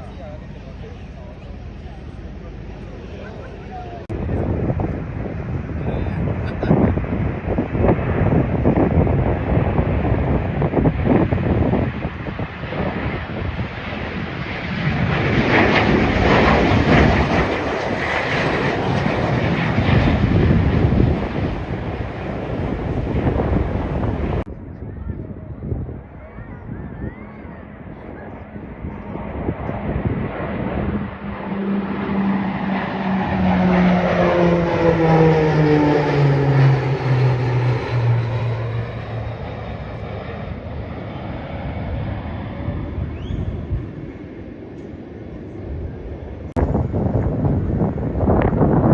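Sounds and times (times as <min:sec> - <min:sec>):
faint steady rumble: 0:00.0 - 0:07.4
aircraft passing by: 0:00.0 - 0:48.9
wind on microphone: 0:04.0 - 0:48.9.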